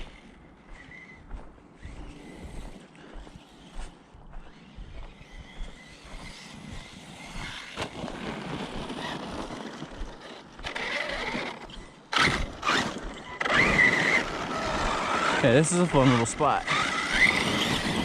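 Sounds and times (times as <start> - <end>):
electric motor whining: 4.4 - 18.0
tyres scrabbling on dirt: 5.7 - 18.0.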